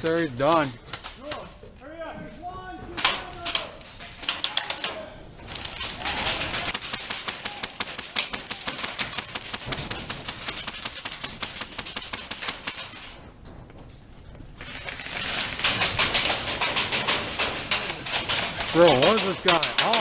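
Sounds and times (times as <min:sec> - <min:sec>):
airsoft gun firing bursts: 0:05.6 - 0:13.1.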